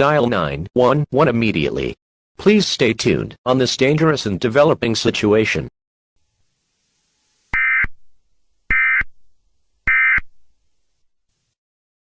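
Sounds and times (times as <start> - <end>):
buzzing electronic data tones: 6.2 - 8.1, 8.7 - 9.2, 9.8 - 10.4.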